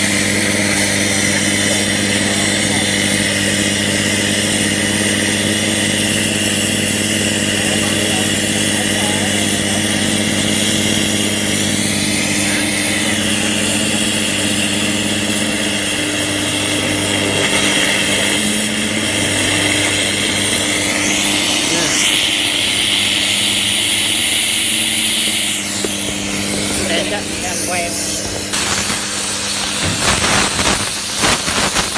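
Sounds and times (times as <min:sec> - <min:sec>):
electrical hum: 0:00.0 - 0:31.9
plasma cutter hissing: 0:00.0 - 0:31.9
high whine: 0:06.6 - 0:31.9.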